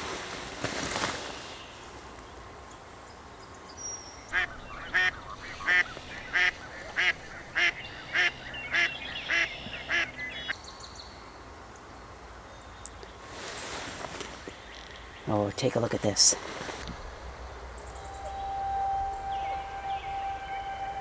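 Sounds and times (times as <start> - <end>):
wind noise on microphone: 4.3 - 9.9
waterfowl honking quacks: 4.3 - 10.5.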